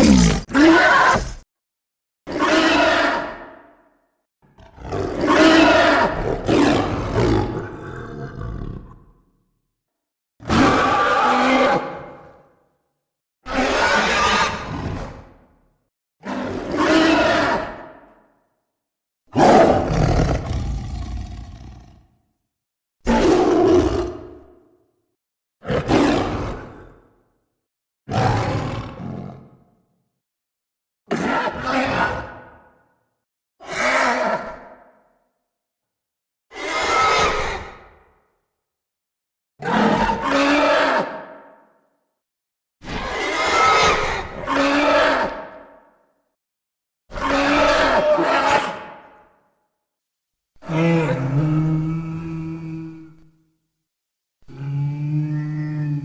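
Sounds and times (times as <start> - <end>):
monster roaring: 0.0 - 1.4, 19.4 - 22.1, 50.6 - 53.2.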